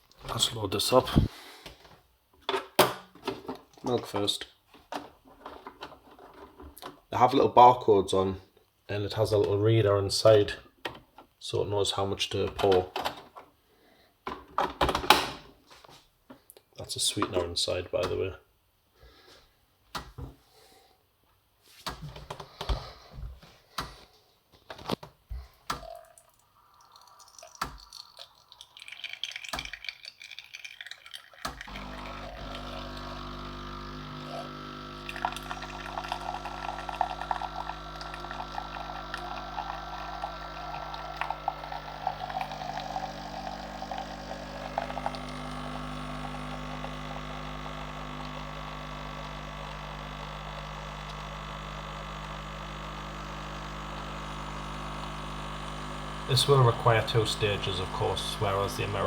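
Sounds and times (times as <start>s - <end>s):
liquid pouring: 25.7s - 59.0s
coffee machine pump running: 26.9s - 59.0s.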